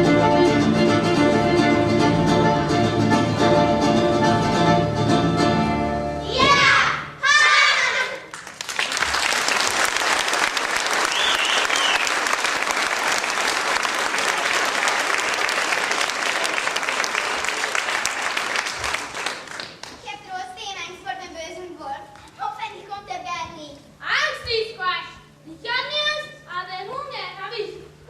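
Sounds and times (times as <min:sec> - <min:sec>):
audience applauding: 0:08.3 - 0:20.0.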